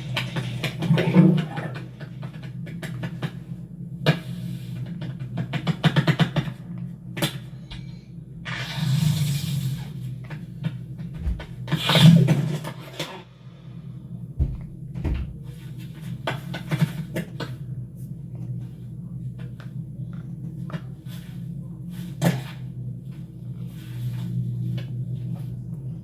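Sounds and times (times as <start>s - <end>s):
low machine-like hum: 0.0s - 26.0s
clunks rattles and knocks: 14.4s - 15.5s.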